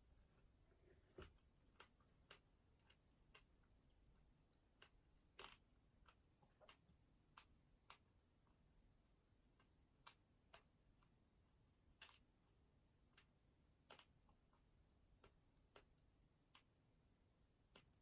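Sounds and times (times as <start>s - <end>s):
faint sharp clicks and taps: 0.0s - 8.6s.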